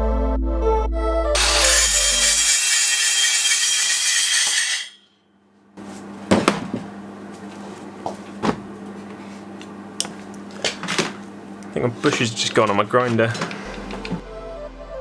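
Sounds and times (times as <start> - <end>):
angle grinder grinding steel: 1.4 - 5.0, 11.7 - 14.2
steady low hum: 5.7 - 14.2
metal tools clattering: 12.0 - 14.2.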